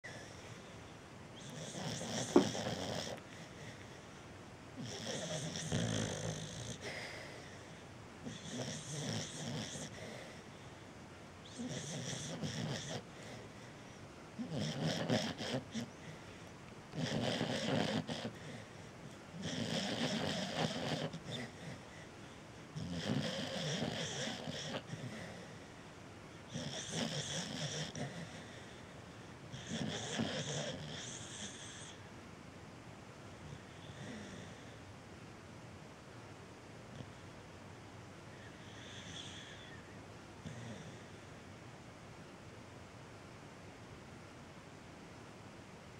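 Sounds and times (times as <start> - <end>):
dog snoring: 0.0 - 0.7, 1.4 - 4.0, 4.8 - 10.5, 11.4 - 13.8, 14.4 - 16.3, 16.9 - 22.1, 22.7 - 25.7, 26.4 - 28.9, 29.5 - 32.0, 33.4 - 34.8, 38.3 - 39.8, 40.4 - 41.1.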